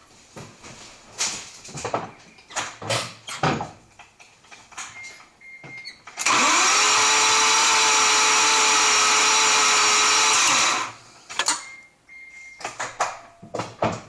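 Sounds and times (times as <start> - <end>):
starter motor cranking engine: 6.2 - 11.6.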